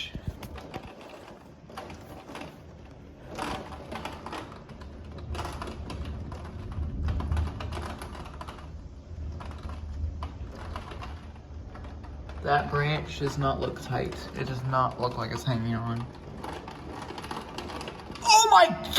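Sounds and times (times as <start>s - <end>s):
wind: 0.0s - 18.9s
low thunder rumble: 5.0s - 14.6s.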